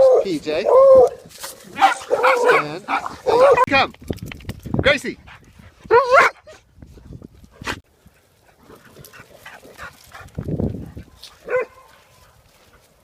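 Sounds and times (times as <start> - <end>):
dogs barking and yipping: 0.0 - 3.7, 5.9 - 6.6, 11.0 - 12.3
dog yelping: 1.8 - 3.7, 5.9 - 6.6.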